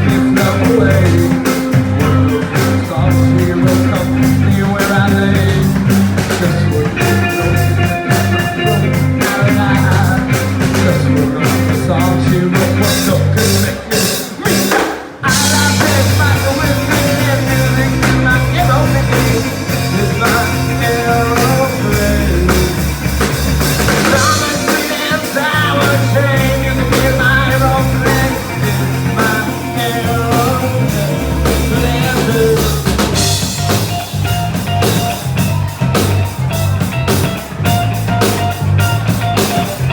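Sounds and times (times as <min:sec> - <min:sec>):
bass guitar: 0:00.0 - 0:39.9
drum kit beat: 0:00.0 - 0:39.9
electric guitar: 0:00.0 - 0:39.9
person singing: 0:00.0 - 0:39.9.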